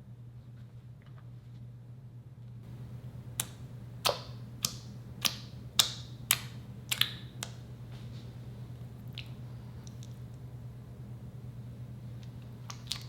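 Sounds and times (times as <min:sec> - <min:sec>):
slime clicking pops: 0:03.4 - 0:07.6.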